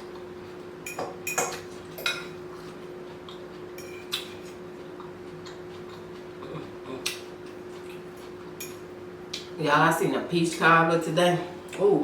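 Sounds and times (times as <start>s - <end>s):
utensils clinking on a dish: 0.9s - 2.4s.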